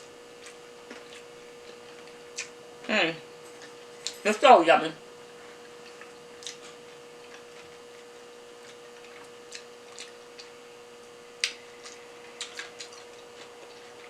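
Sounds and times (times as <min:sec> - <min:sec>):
faint hum: 0:00.0 - 0:14.0
wet chewing clicks: 0:05.7 - 0:10.6, 0:11.4 - 0:14.0.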